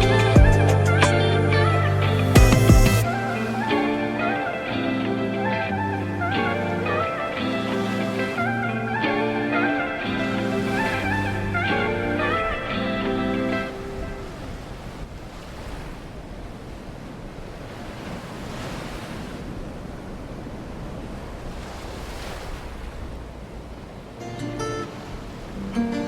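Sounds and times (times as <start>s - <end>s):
music: 0.0s - 13.9s, 24.3s - 25.0s, 25.7s - 26.0s
gentle ocean waves washing ashore: 0.1s - 26.0s.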